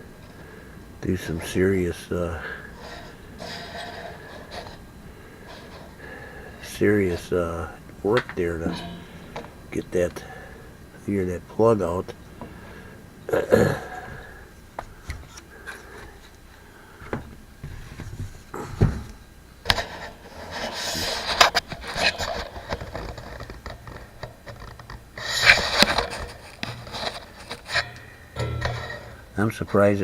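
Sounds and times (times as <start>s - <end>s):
clicks and knocks: 8.2s - 9.7s, 22.7s - 29.4s
rubbing and scraping: 8.2s - 10.4s, 19.7s - 30.0s.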